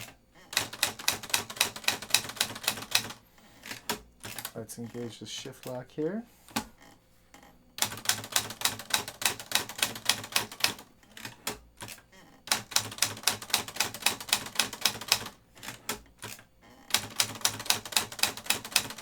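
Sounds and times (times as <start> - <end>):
manual typewriter typing: 0.0 - 5.9, 7.8 - 19.0.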